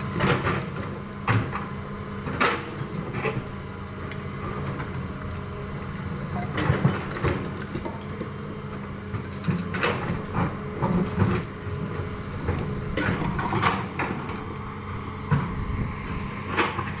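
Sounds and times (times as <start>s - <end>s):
excavator engine running: 0.0s - 17.0s.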